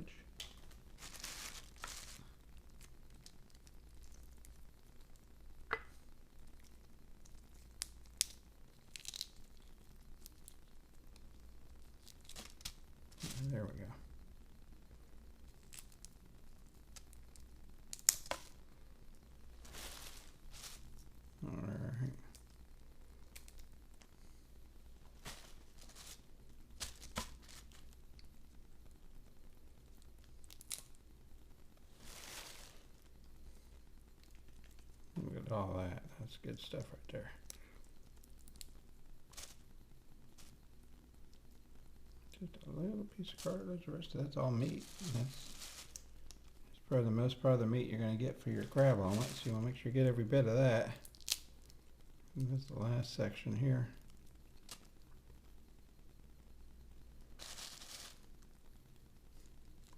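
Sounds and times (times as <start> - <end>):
crab shell cracking by hand: 1.8 - 12.8, 16.9 - 18.7, 23.2 - 24.1, 30.0 - 31.1, 51.0 - 52.5, 54.0 - 55.2.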